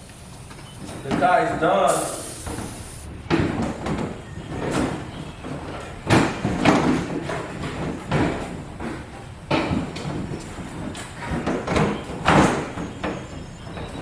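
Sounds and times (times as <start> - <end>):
handling noise: 0.0 - 3.1.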